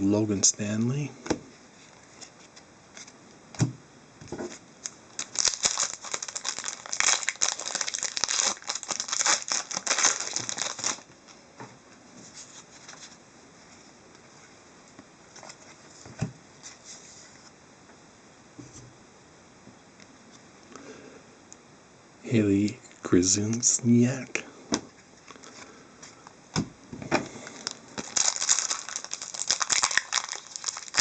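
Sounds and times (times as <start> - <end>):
plastic wrapper tearing and crinkling: 4.8 - 11.1, 27.4 - 31.0.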